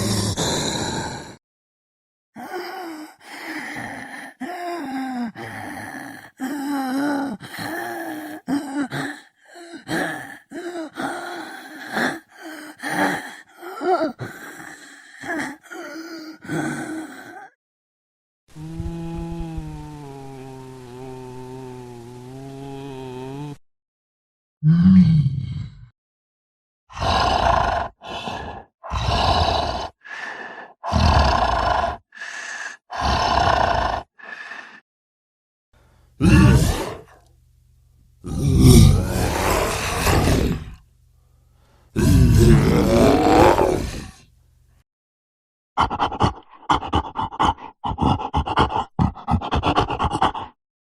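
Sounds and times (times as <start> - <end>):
monstrous voice growling: 0.0 - 1.4, 36.2 - 37.2, 38.2 - 40.8, 42.0 - 44.2, 45.8 - 50.6
zombie groans and moans: 0.0 - 1.4, 2.4 - 17.6, 18.5 - 23.6, 24.6 - 25.9, 26.9 - 34.8, 36.2 - 37.3, 38.2 - 40.8, 42.0 - 44.2, 45.8 - 50.6.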